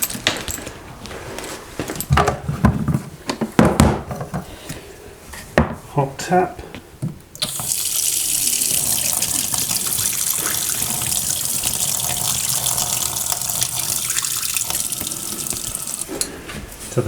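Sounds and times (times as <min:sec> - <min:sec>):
water tap running: 0:07.4 - 0:16.9.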